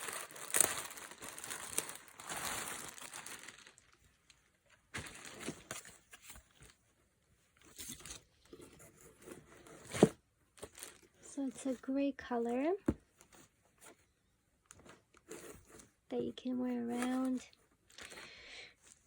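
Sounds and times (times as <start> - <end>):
packaging crinkling and rustling: 0.0 - 6.8, 9.6 - 11.9.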